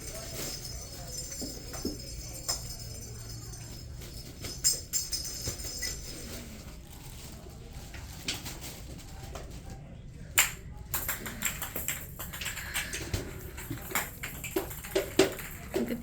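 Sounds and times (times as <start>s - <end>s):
small jingle bells rattling: 0.0s - 7.2s, 10.9s - 16.0s.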